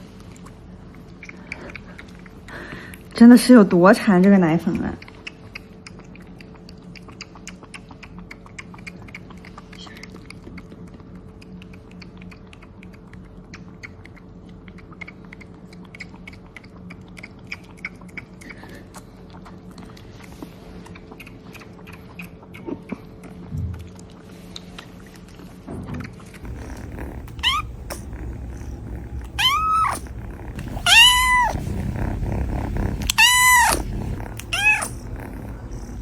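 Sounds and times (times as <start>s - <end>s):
kitten drinking with wet smacking: 26.4s - 36.0s.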